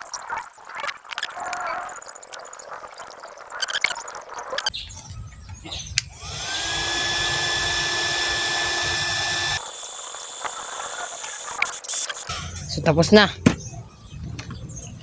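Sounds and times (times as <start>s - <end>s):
electric blower motor whine: 6.1s - 12.2s.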